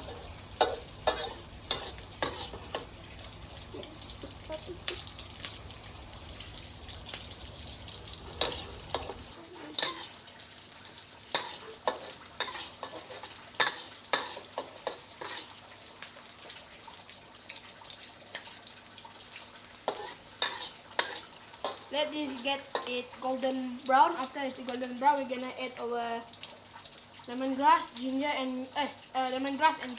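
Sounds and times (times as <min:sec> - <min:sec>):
meat sizzling in hot oil: 0:00.0 - 0:29.9.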